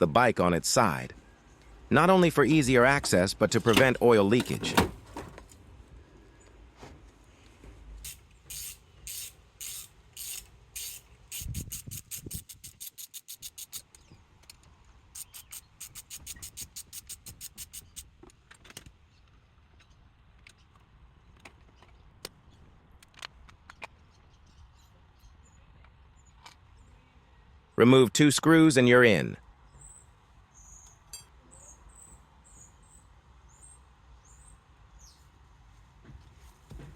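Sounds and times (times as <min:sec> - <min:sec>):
ratchet wrench clicking: 0:08.0 - 0:14.0, 0:15.2 - 0:18.1.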